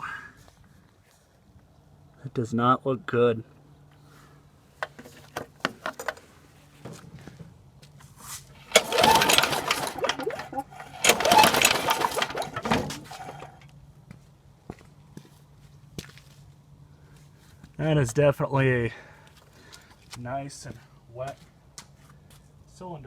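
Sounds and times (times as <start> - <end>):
recoil starter pulls: 4.8 - 6.2, 8.6 - 13.6
engine turning over with rattling whir: 4.8 - 6.3, 8.6 - 13.6.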